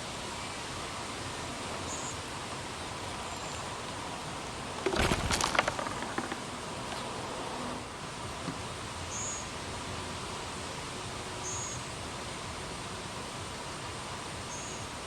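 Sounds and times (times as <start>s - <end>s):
rustling and crackling: 4.6s - 7.7s.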